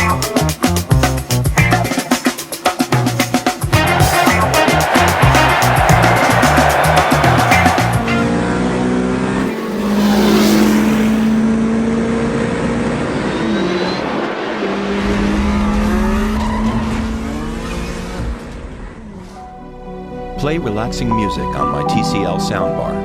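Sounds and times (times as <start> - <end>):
music: 0.0 - 8.5, 19.4 - 23.0
car engines passing: 5.9 - 19.2
swooshing noise: 9.4 - 11.5.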